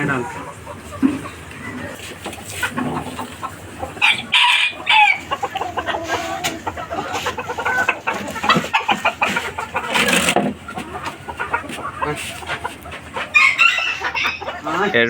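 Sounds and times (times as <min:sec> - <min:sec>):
hens clucking: 0:00.0 - 0:15.0
rooster crowing: 0:04.0 - 0:05.4, 0:13.3 - 0:14.5.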